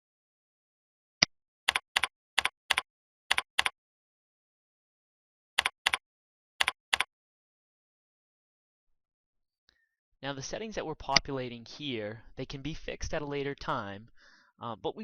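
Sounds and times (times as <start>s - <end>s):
computer mouse clicking: 1.7s - 3.7s, 5.6s - 6.0s.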